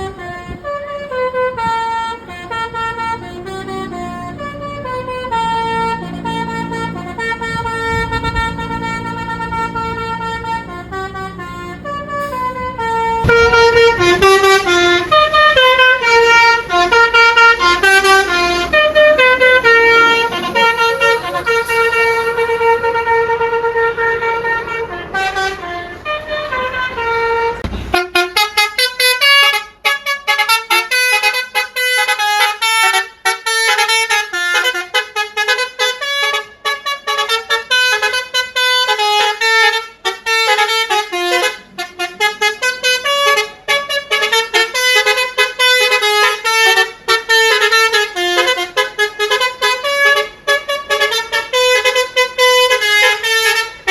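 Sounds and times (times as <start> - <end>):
low engine rumble: 0.0 - 28.8
bus horn playing melody: 0.0 - 53.9.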